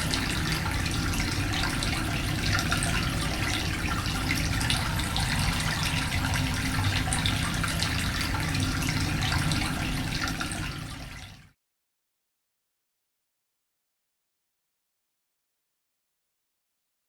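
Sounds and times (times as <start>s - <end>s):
running water with splashes: 0.0s - 11.4s.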